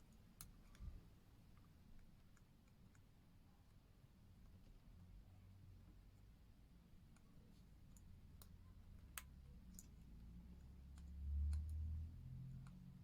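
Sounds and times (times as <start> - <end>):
watch parts and tweezers clicking: 10.6 - 13.0.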